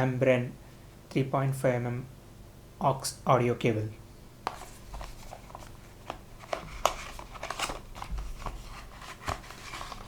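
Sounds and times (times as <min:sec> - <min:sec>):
package clicks and crinkles: 0:04.5 - 0:10.0.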